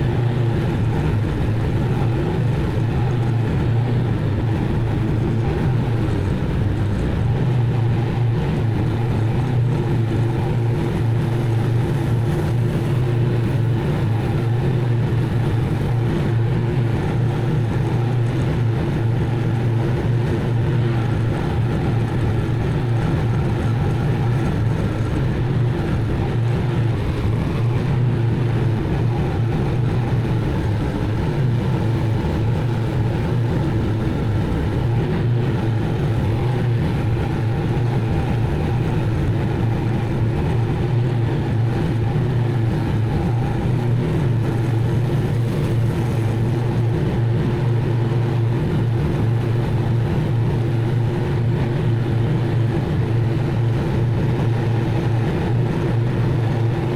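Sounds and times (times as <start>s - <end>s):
mower engine running: 0.0s - 56.9s.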